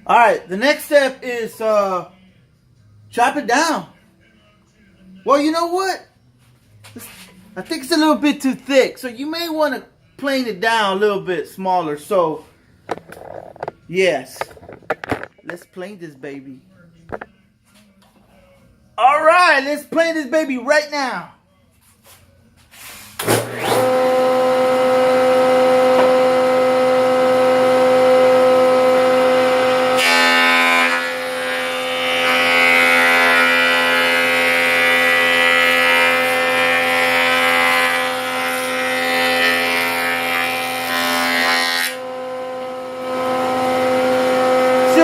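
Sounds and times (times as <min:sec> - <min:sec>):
electric wood planer motor whine: 0:23.4 - 0:45.0.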